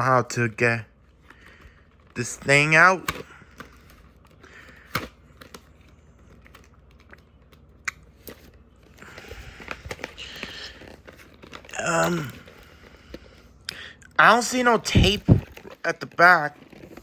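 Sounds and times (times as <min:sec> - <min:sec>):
scraping and rustling: 0:14.6 - 0:17.0.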